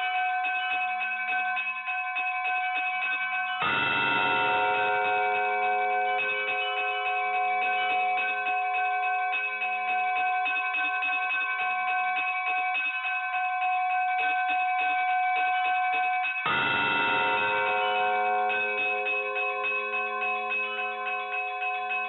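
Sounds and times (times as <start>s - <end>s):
bells ringing in a rapid peal: 0.0s - 22.0s.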